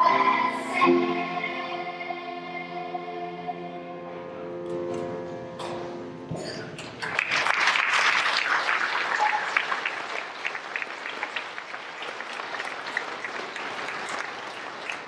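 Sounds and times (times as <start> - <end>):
audience applauding: 7.0 - 15.0.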